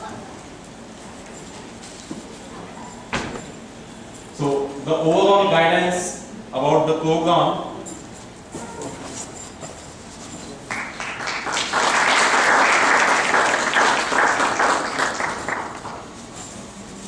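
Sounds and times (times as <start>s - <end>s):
audience applauding: 10.6s - 16.1s.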